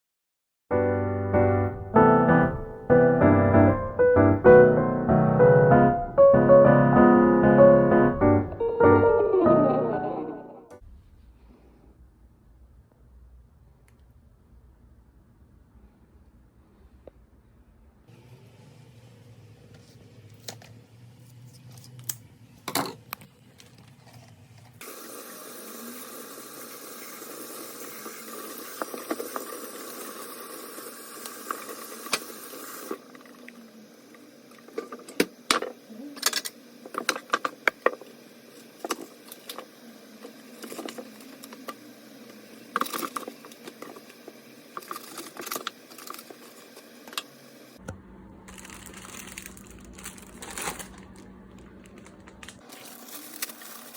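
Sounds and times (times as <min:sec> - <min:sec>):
water running from a tap: 0:24.8 - 0:33.0.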